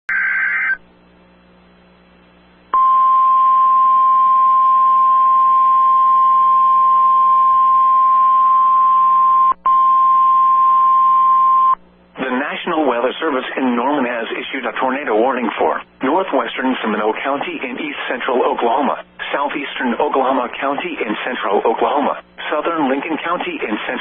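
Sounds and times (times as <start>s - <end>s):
radio hiss and hum: 0.1s - 2.7s, 11.8s - 24.0s
high warning alarm beep: 2.8s - 11.8s.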